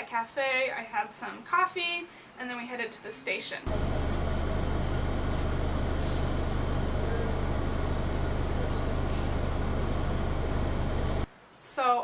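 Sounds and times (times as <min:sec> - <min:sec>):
passenger train rumbling: 0:03.7 - 0:11.3.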